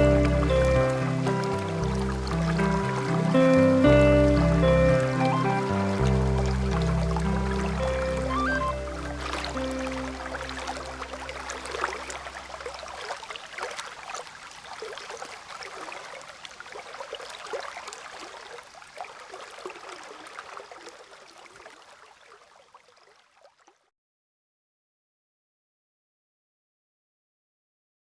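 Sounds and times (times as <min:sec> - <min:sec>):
soft background music: 0:00.0 - 0:12.6
water trickling and splashing: 0:00.0 - 0:23.9.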